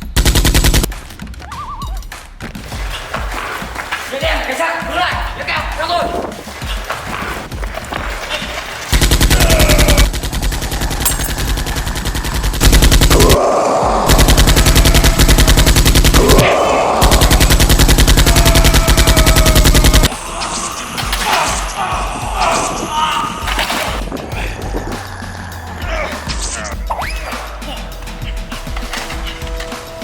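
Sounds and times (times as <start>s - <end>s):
rapid machine-gun fire: 0.0s - 0.9s, 8.9s - 13.4s, 14.1s - 20.1s.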